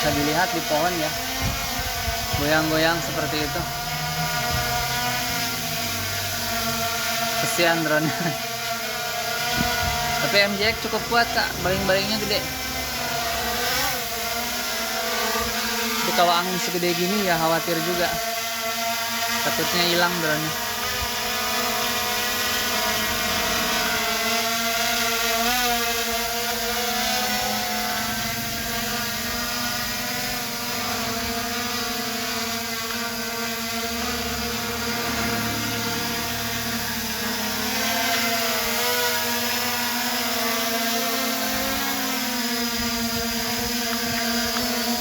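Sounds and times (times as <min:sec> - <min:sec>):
drone propellers buzzing: 0:00.0 - 0:45.0
wind rumbling on microphone: 0:01.4 - 0:02.7, 0:09.5 - 0:10.8.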